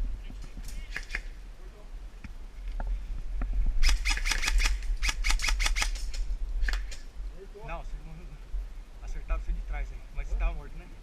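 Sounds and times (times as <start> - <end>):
steady low rumble: 0.0 - 11.0
airsoft gun shots: 3.8 - 7.0.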